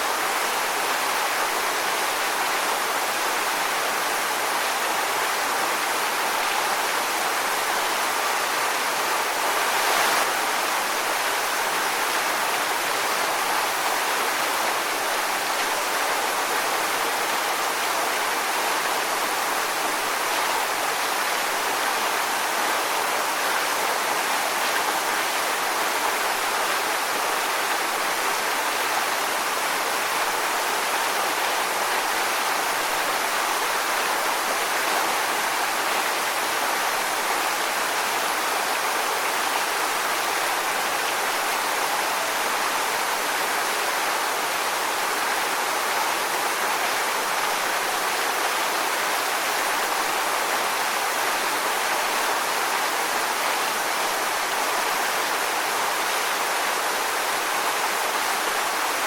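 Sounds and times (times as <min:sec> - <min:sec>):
water rushing over rocks: 0:00.0 - 0:59.0.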